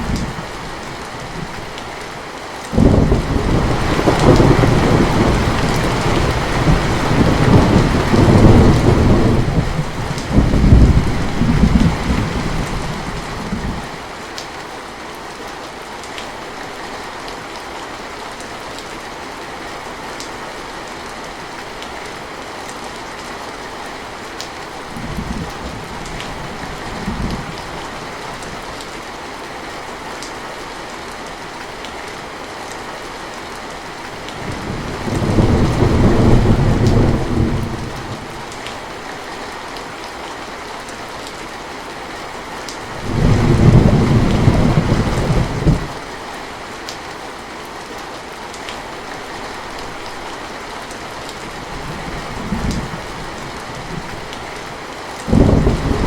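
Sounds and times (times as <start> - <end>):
steady rain falling: 0.0 - 56.0
thunder rumbling: 2.8 - 13.9, 34.4 - 38.5, 42.9 - 46.0, 55.3 - 56.0.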